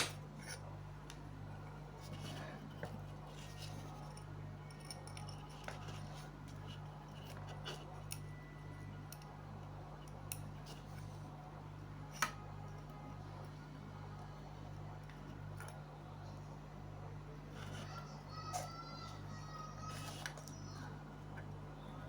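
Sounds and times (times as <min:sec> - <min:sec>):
low electrical hum: 0:00.0 - 0:22.0
small tools clicking and tapping: 0:02.1 - 0:11.1, 0:19.9 - 0:21.6.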